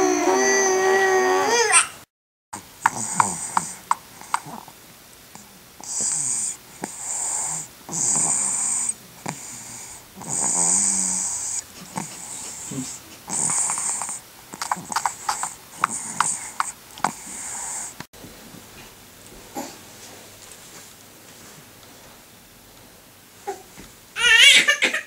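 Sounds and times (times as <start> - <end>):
baby snoring: 0.0 - 1.8, 2.8 - 4.7, 5.8 - 18.0.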